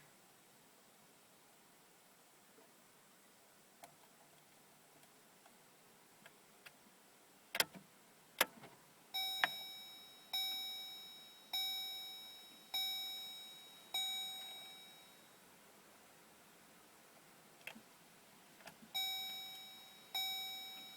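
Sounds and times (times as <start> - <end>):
vehicle warning chime: 9.2 - 15.5, 18.9 - 20.9.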